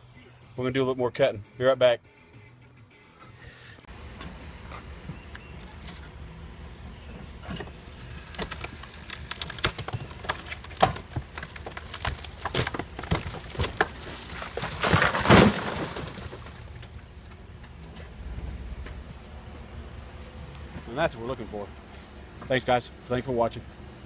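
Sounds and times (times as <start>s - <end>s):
wooden wall cracking and snapping: 8.0s - 17.0s
wall crashing down: 9.5s - 16.7s
vehicle engine running: 16.6s - 24.0s.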